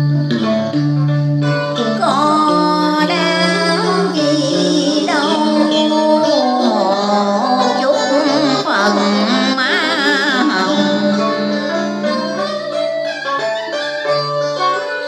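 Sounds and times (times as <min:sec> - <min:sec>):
held low tones: 0:00.0 - 0:12.8
plucked string instruments: 0:00.0 - 0:15.0.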